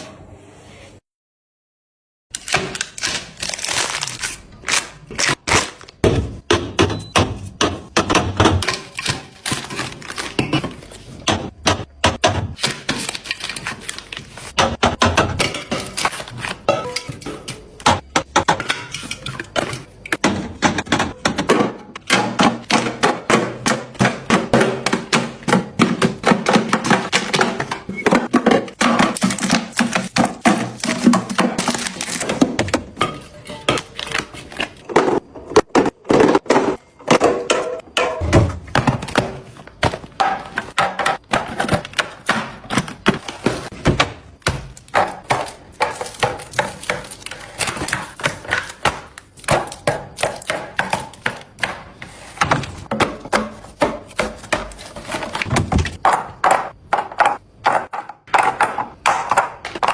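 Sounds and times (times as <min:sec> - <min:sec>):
small items tapping and clacking: 0:12.6 - 0:36.6, 0:38.7 - 0:59.9.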